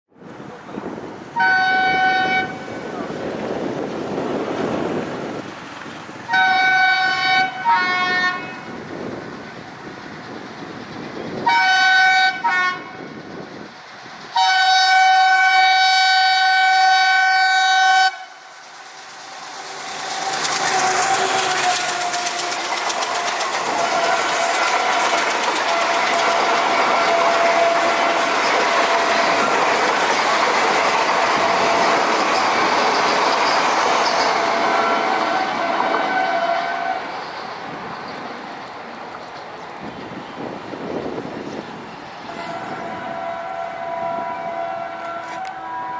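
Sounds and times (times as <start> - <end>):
train wheels on rails: 0.2 - 45.9
diesel locomotive horn: 1.3 - 3.0, 6.3 - 8.8, 11.4 - 13.1, 14.3 - 18.4, 20.3 - 32.2, 34.2 - 37.2, 42.2 - 45.9.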